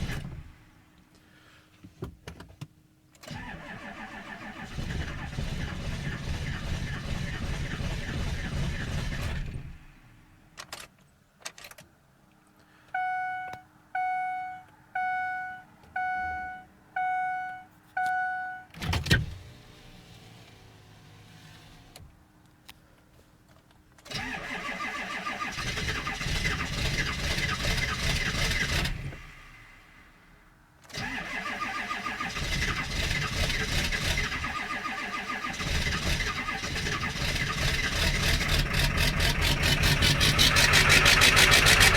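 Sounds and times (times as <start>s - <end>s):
starter cranking engine: 3.3s - 9.6s, 24.1s - 29.2s, 30.9s - 41.9s.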